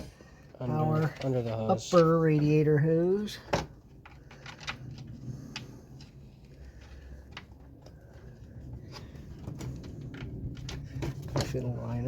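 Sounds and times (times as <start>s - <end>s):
plastic fan shroud clicks and knocks: 8.7s - 12.0s.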